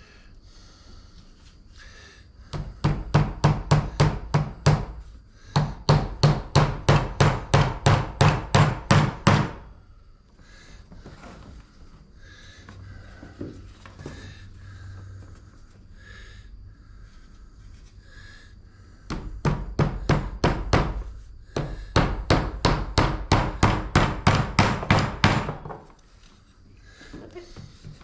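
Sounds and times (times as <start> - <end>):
hammer tapping nails into wood: 2.5 - 9.6, 19.1 - 25.9.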